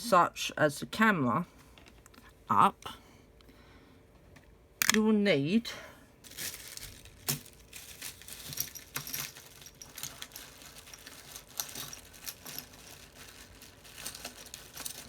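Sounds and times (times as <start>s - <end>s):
hand tools clicking and rattling: 7.2s - 15.0s.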